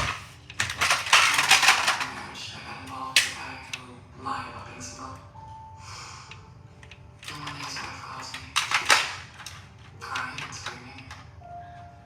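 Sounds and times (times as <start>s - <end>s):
plastic toy track clattering: 0.0s - 3.8s, 7.2s - 11.4s.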